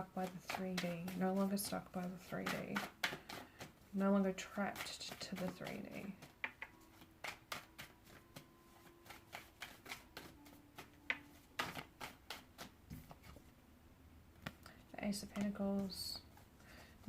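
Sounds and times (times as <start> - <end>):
cards shuffling and snapping: 2.4 - 3.8, 4.9 - 13.4.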